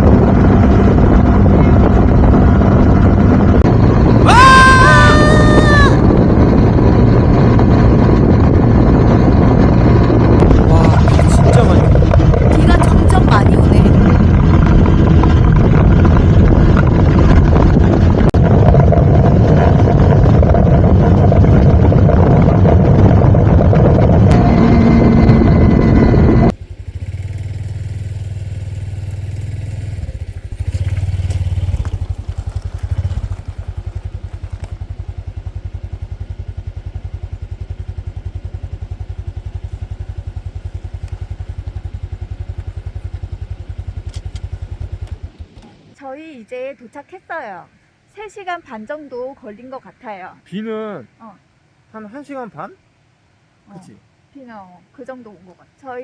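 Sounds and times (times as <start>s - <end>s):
motorcycle engine running: 0.0s - 46.0s
loud rushing noise: 10.4s - 14.4s.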